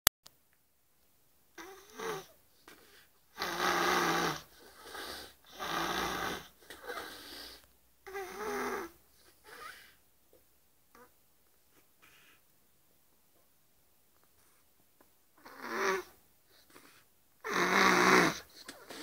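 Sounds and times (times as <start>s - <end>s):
woman snoring: 1.6s - 2.3s, 3.4s - 9.9s, 15.4s - 16.1s, 17.4s - 19.0s.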